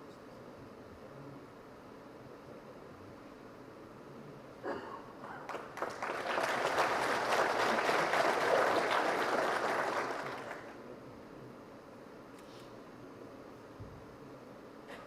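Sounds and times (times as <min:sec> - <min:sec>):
audience applauding: 0:05.4 - 0:10.8.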